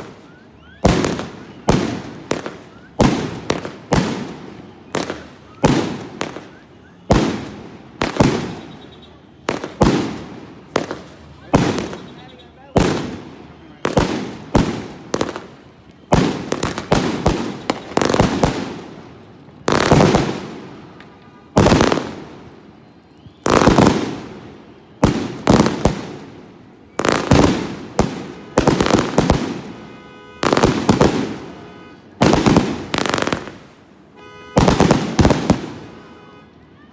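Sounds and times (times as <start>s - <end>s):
fireworks bangs echoing: 0.0s - 22.8s, 23.4s - 36.2s.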